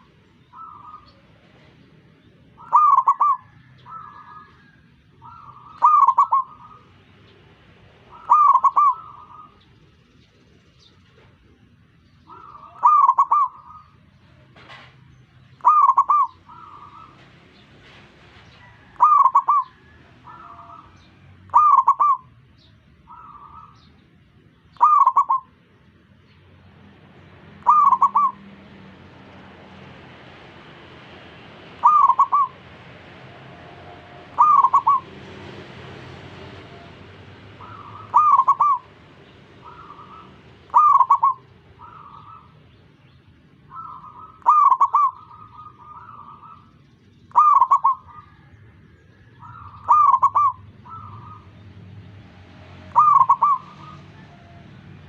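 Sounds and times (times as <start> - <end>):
dove cooing loudly: 0.0 - 1.2, 2.6 - 7.0, 8.0 - 9.6, 12.3 - 14.0, 15.6 - 17.2, 18.6 - 22.4, 23.1 - 23.9, 24.8 - 25.6, 27.6 - 28.9, 31.6 - 42.6, 43.7 - 46.7, 47.3 - 51.6, 52.8 - 54.7.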